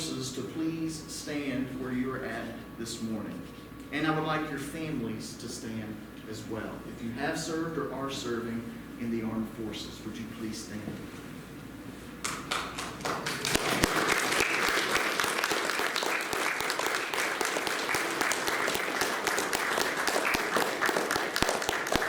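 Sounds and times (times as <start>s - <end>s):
crowd applauding: 12.2s - 22.0s.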